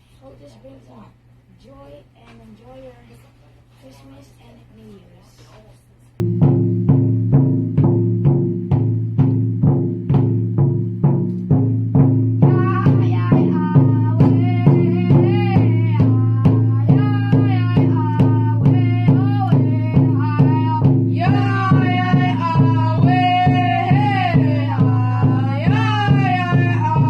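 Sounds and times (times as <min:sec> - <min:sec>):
big drum steady beat: 0:06.2 - 0:27.0
strong high voice singing: 0:06.2 - 0:27.0
voices chanting: 0:12.4 - 0:27.0.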